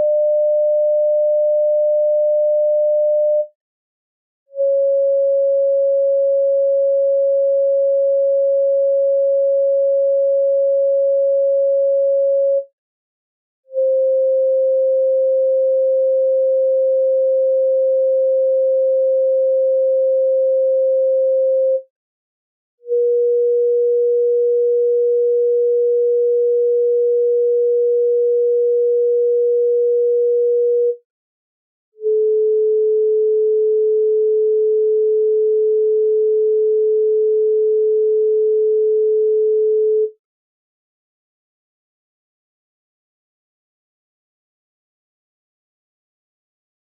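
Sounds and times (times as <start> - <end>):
pure sine tones: 0.0 - 3.5, 4.6 - 12.6, 13.7 - 21.8, 22.9 - 31.0, 32.0 - 40.2.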